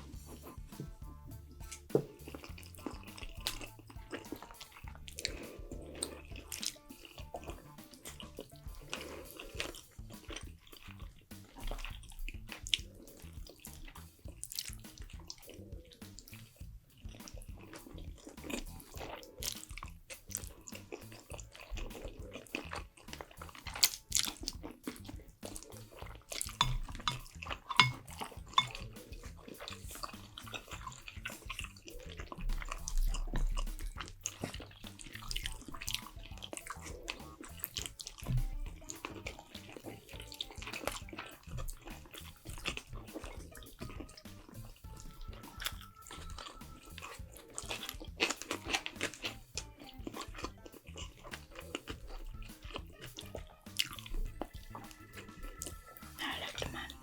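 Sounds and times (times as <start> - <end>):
wet chewing and slurping: 0.0 - 57.0.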